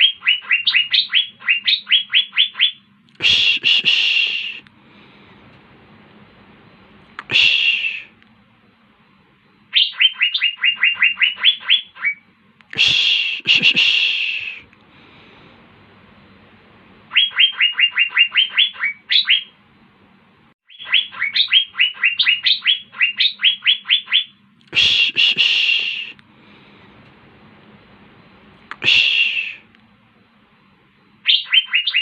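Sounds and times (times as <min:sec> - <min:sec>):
bird whistling rapid notes: 0:00.0 - 0:04.6, 0:09.7 - 0:12.2, 0:17.1 - 0:19.5, 0:20.7 - 0:24.3, 0:31.2 - 0:32.0
harsh bird call: 0:00.0 - 0:04.6, 0:07.2 - 0:08.2, 0:09.7 - 0:12.2, 0:12.8 - 0:14.7, 0:17.1 - 0:19.6, 0:20.7 - 0:26.2, 0:28.8 - 0:29.7, 0:31.2 - 0:32.0.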